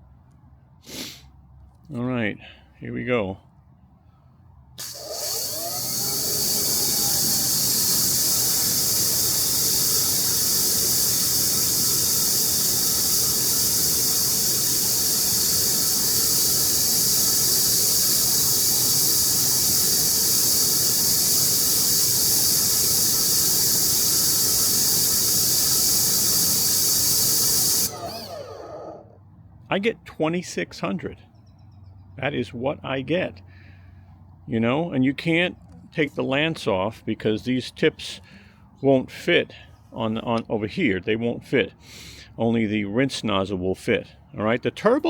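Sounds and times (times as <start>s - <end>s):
pressure washer jet hissing: 4.8s - 29.0s
faint electric motor hum: 4.8s - 29.2s.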